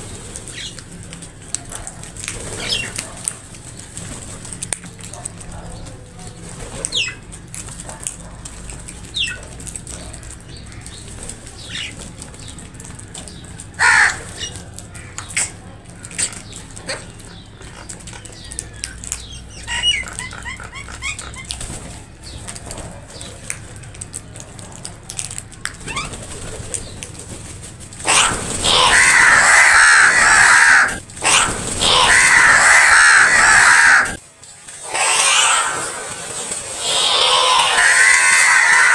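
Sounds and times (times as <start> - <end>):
crows cawing: 13.8 - 16.3, 28.0 - 34.2, 34.8 - 38.9
wing flaps: 25.8 - 38.9.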